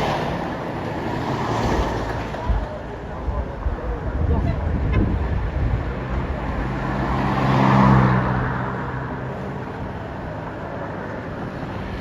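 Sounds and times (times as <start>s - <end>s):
steady traffic noise: 0.0s - 12.0s
vehicle passing by: 5.6s - 10.0s.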